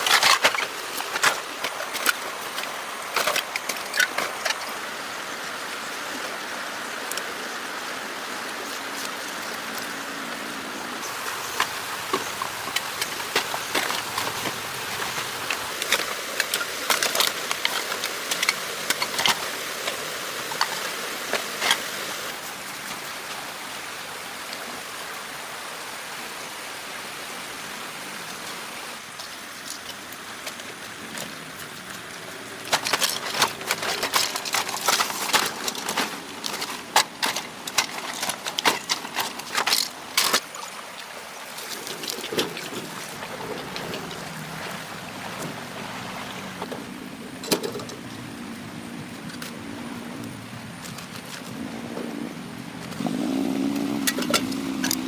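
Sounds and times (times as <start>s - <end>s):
rushing floodwater: 0.0s - 55.0s
sharp splashes and knocks: 11.1s - 22.0s, 29.6s - 45.8s, 52.8s - 55.0s.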